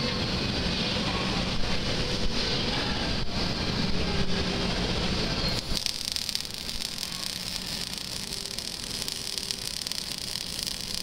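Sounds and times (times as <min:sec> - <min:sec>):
welding arc fizzing crackle: 0:05.6 - 0:11.0.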